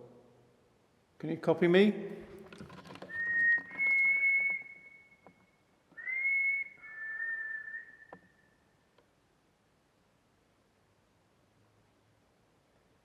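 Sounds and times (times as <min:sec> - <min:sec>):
person whistling held notes: 0:03.1 - 0:05.3, 0:06.0 - 0:08.3.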